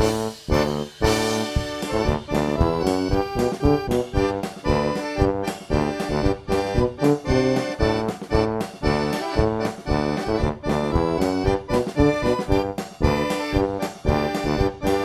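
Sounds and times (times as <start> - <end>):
instrumental music with steady beat: 0.0 - 15.0.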